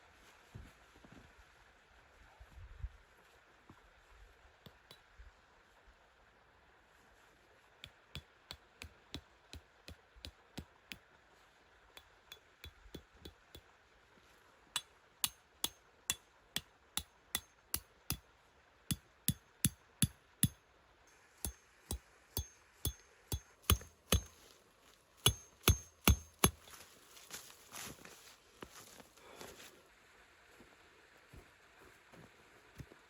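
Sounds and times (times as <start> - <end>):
ringing hammer-like strikes: 21.4 - 24.3, 25.2 - 26.6.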